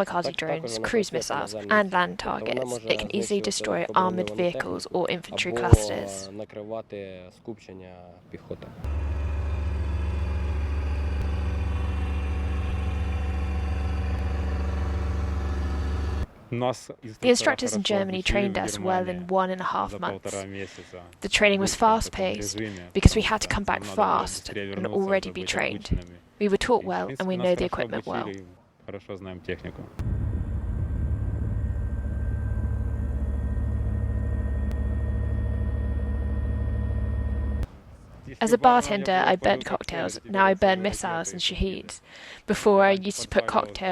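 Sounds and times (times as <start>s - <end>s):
large engine droning: 8.7s - 16.3s, 30.0s - 37.7s
whining tones: 8.7s - 16.3s, 30.0s - 37.7s.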